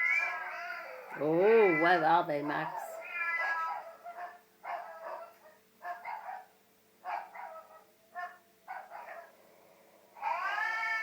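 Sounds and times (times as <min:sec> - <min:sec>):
dog long drawn-out call: 0:00.0 - 0:01.7, 0:02.7 - 0:09.4, 0:10.2 - 0:11.0
dog barking: 0:02.7 - 0:09.4.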